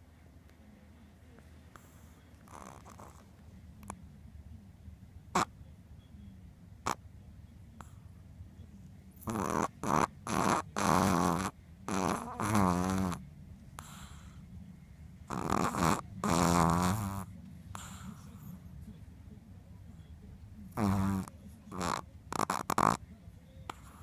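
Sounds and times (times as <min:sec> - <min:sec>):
dog snoring loudly: 0:01.8 - 0:03.2, 0:09.2 - 0:13.2, 0:15.3 - 0:18.2, 0:20.7 - 0:23.0.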